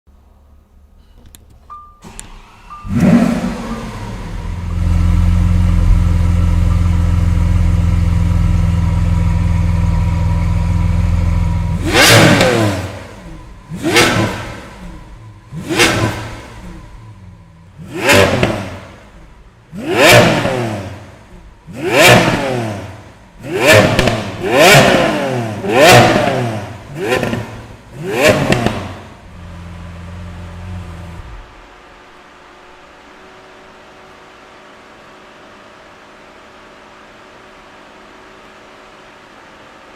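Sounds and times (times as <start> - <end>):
car engine revving: 2.4 - 31.7
car engine running loudly: 2.9 - 31.8.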